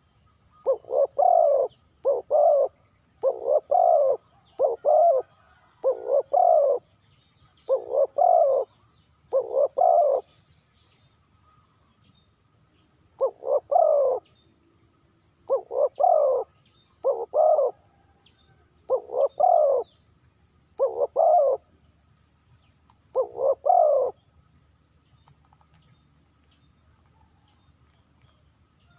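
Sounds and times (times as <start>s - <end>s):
dove cooing: 0.6s - 6.9s, 7.7s - 10.3s, 13.2s - 14.3s, 15.4s - 18.2s, 18.9s - 20.0s, 20.8s - 21.7s, 23.1s - 24.2s.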